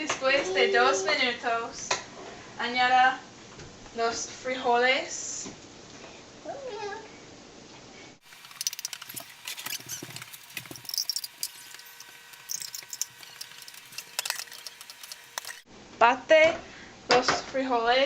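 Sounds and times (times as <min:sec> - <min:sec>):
food frying crackling and popping: 0:08.2 - 0:15.7.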